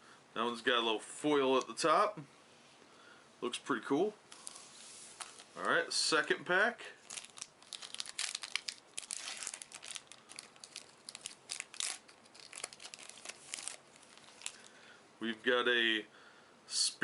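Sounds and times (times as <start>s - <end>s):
foil wrapper crinkling and tearing: 7.0s - 14.7s.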